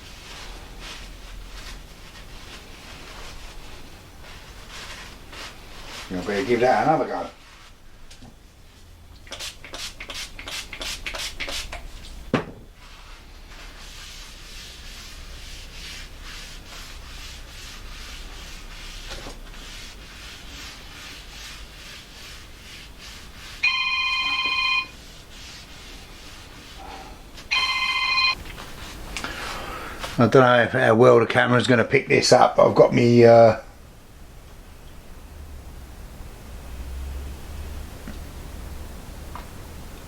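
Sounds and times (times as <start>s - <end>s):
cloth scrubbing a surface: 0.0s - 7.8s, 8.7s - 11.8s, 12.7s - 30.5s
telephone ringing: 23.6s - 25.0s, 27.5s - 28.4s.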